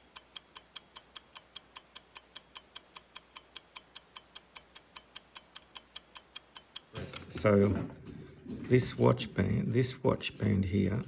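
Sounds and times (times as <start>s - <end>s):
watch ticking: 0.0s - 7.5s.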